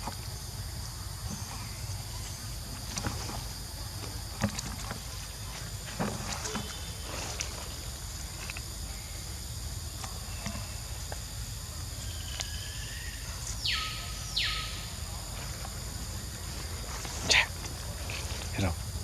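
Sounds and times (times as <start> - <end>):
insect drone: 0.0 - 19.0.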